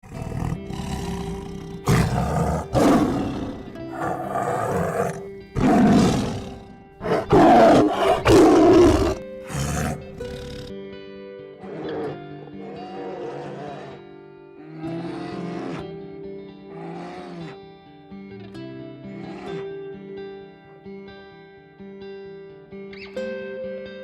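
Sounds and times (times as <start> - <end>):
big cat roaring: 0.0 - 10.7, 11.6 - 16.0, 16.7 - 17.6
background music sustained tones: 0.0 - 24.0.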